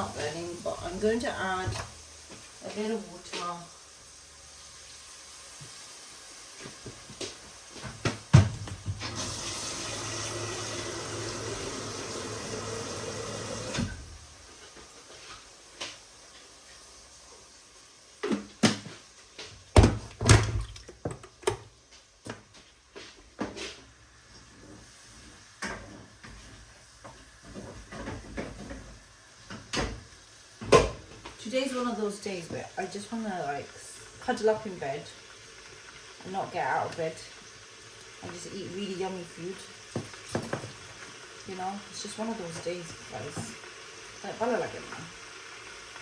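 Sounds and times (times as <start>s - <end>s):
kitchen tap running: 0.0s - 14.6s, 24.2s - 46.0s
pots and utensils clattering: 39.9s - 41.0s.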